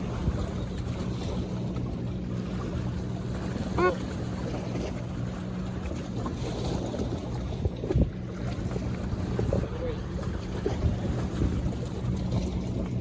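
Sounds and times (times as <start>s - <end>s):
boat motor droning: 0.0s - 13.0s
wind on microphone: 7.4s - 13.0s.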